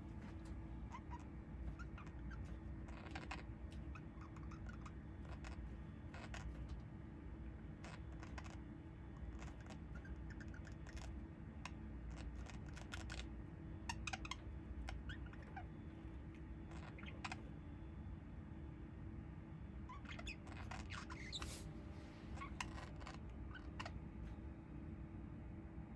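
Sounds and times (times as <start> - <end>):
low steady hum: 0.0 - 25.9
small bird chirps: 0.3 - 6.8, 7.6 - 15.9, 16.5 - 17.6, 19.8 - 21.7, 22.3 - 24.0.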